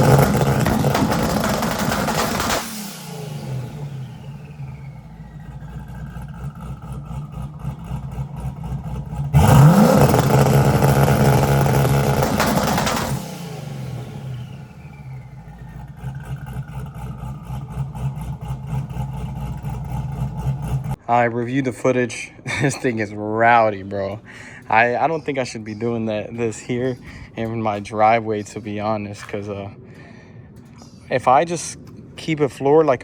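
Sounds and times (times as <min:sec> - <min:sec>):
car engine idling and revving: 0:00.0 - 0:21.0.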